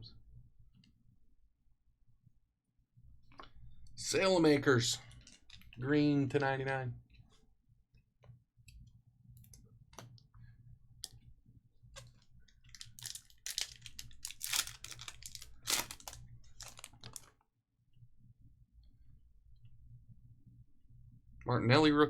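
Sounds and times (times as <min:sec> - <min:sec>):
faint low hum: 0:00.0 - 0:22.0
trading cards being handled: 0:12.7 - 0:17.3.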